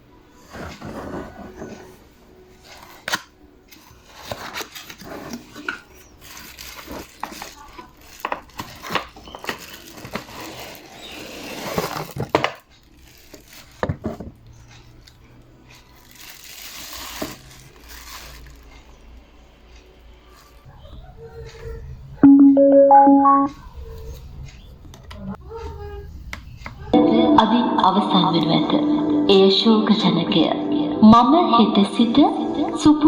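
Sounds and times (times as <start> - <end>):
packaging rustling: 2.6 - 15.2, 15.8 - 19.0
hard objects clicking and knocking: 4.2 - 15.2.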